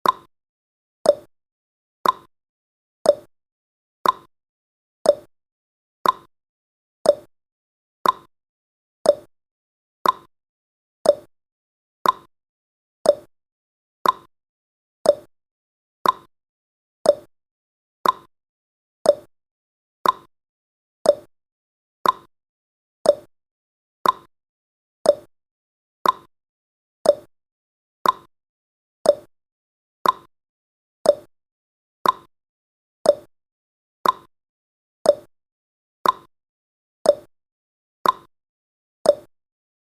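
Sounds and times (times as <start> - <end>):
clock ticking: 2.0 - 2.3, 4.0 - 4.3, 6.0 - 6.3, 8.0 - 8.3, 10.0 - 10.3, 12.0 - 12.3, 14.0 - 14.3, 15.1 - 15.3, 16.0 - 16.3, 18.0 - 18.3, 20.0 - 20.3, 22.0 - 22.3, 24.0 - 24.3, 25.1 - 25.3, 26.0 - 26.3, 27.1 - 27.3, 28.0 - 28.3, 29.1 - 29.3, 30.0 - 30.3, 32.0 - 32.3, 33.1 - 33.3, 34.0 - 34.3, 36.0 - 36.3, 38.0 - 38.3.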